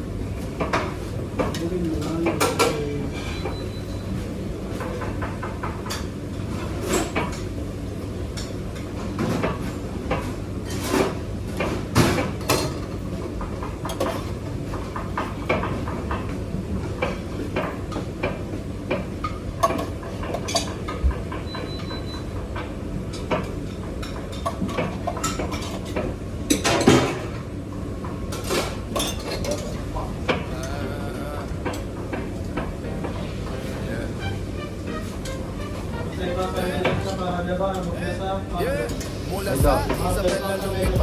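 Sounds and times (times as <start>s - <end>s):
pots and pans clattering: 8.3s - 30.5s
steady low hum: 38.0s - 41.0s.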